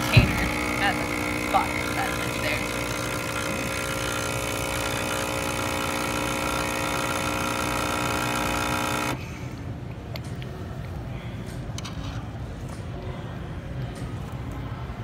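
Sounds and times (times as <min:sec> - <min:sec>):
coffee machine pump humming: 0:00.0 - 0:09.2.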